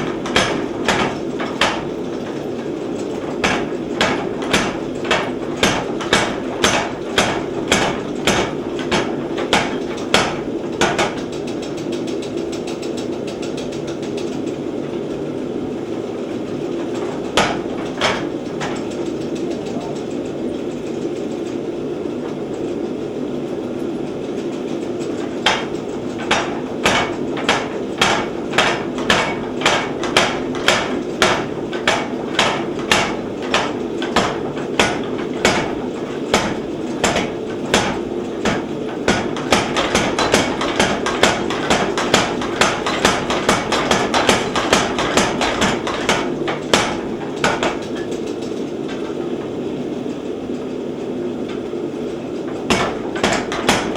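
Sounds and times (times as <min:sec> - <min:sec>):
hammer striking steel bar: 0:00.2 - 0:01.8, 0:03.4 - 0:11.3, 0:17.4 - 0:18.8, 0:25.4 - 0:47.9, 0:52.7 - 0:53.9.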